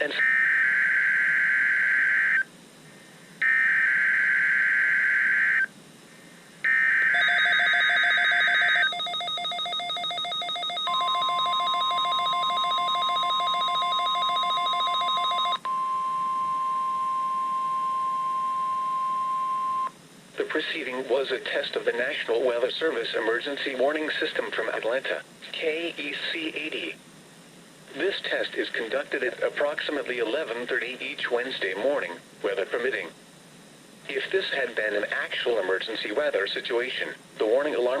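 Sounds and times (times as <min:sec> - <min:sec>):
harsh buzzing data warble: 0:03.4 - 0:05.7, 0:06.6 - 0:15.6
steady warning alarm tone: 0:03.4 - 0:05.7, 0:06.6 - 0:19.9.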